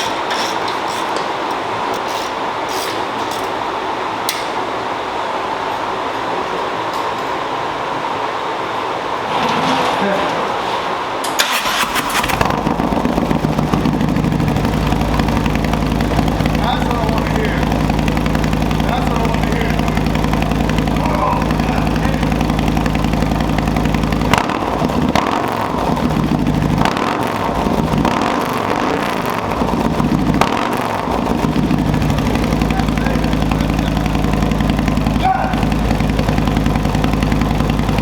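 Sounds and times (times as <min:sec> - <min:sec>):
motorcycle engine idling and revving: 0:11.2 - 0:38.0.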